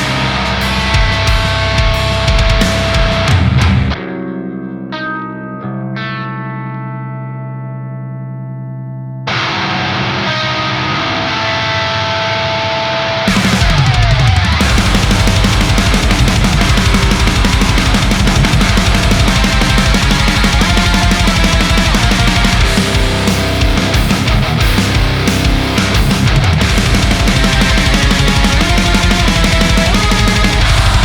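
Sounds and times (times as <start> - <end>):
fast programmed drums: 0.0 - 4.0, 13.3 - 31.0
distorted electric guitar riff: 0.0 - 31.0.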